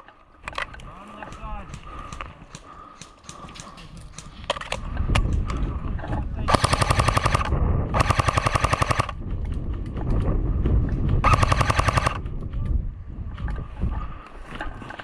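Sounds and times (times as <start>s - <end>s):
airsoft gun firing bursts: 6.5s - 9.2s, 11.2s - 12.3s.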